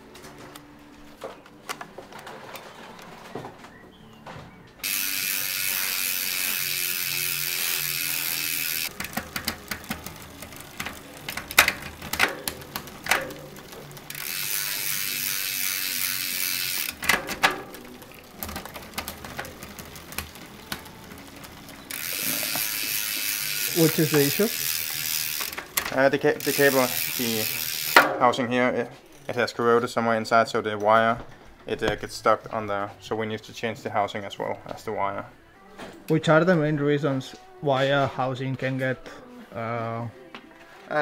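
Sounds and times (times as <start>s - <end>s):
chain and derailleur clicks: 4.8s - 28.0s
freewheel ratchet buzzing: 4.8s - 28.1s.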